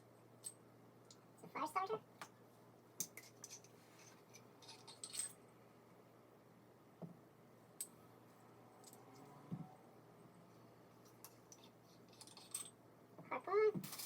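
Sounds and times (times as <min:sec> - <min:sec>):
faint clicks and metal clinks: 0:00.4 - 0:01.4, 0:03.0 - 0:05.5, 0:08.8 - 0:09.3, 0:10.9 - 0:12.8.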